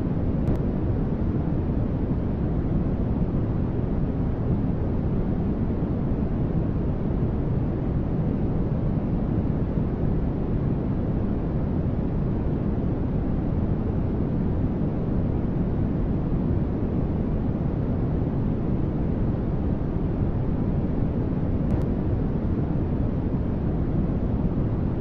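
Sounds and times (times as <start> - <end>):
low white noise rumble: 0.0 - 25.0.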